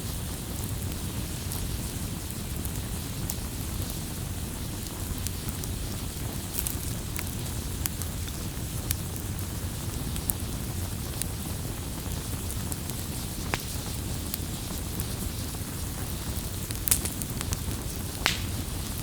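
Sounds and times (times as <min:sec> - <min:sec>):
campfire rumble: 0:00.0 - 0:19.0
wood popping and snapping: 0:18.2 - 0:18.8.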